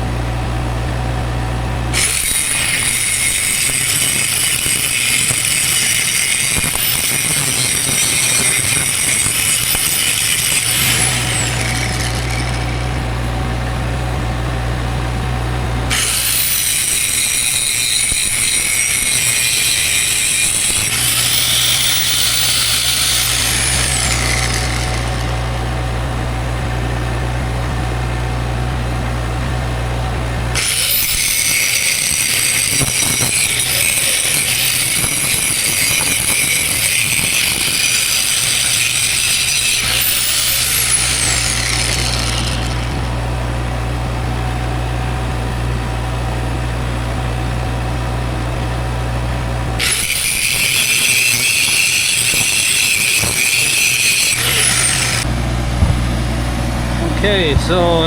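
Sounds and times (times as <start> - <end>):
angle grinder grinding steel: 0.0 - 58.0
engine idling: 10.6 - 16.6, 20.8 - 31.4, 39.8 - 50.1.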